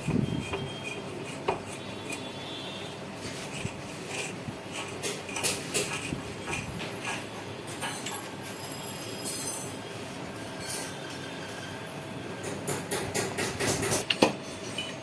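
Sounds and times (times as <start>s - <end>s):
metal tools clinking and scraping: 5.3s - 9.9s, 10.6s - 11.3s, 14.0s - 15.0s.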